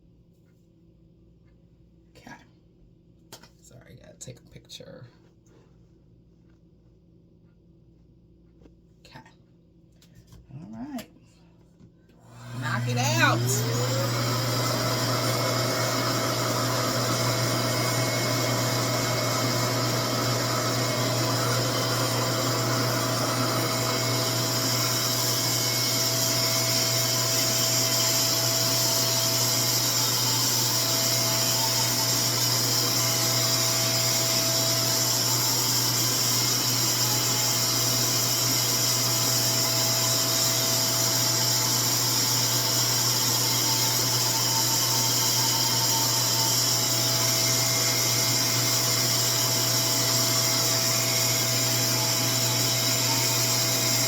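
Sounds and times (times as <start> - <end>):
hair dryer motor humming: 12.2 - 54.0.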